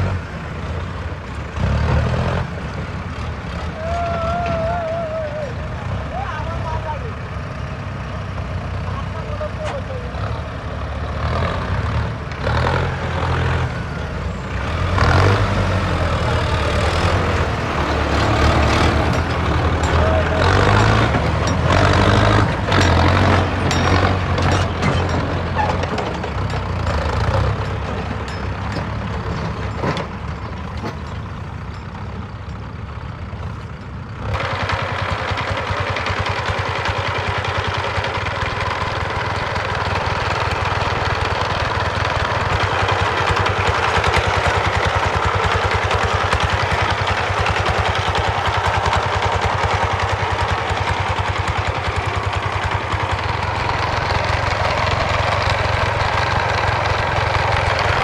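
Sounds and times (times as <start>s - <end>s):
diesel engine rumbling: 0.0s - 58.0s.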